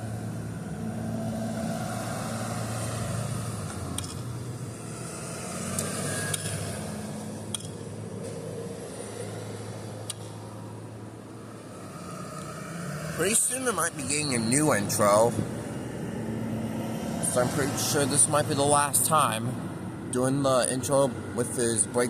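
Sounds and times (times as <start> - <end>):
car and truck engines running: 0.0 - 22.0.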